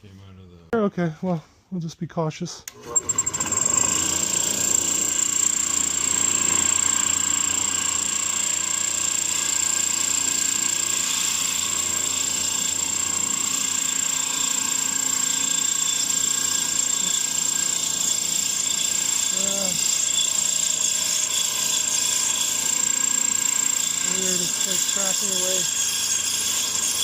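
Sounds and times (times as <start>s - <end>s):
band saw running: 2.8s - 27.0s
high-pitched whine: 15.3s - 27.0s.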